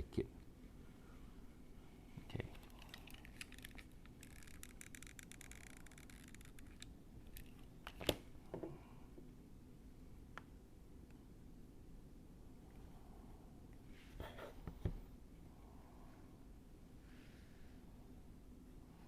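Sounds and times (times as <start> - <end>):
scratchy rustling and ticks: 2.4 - 7.6.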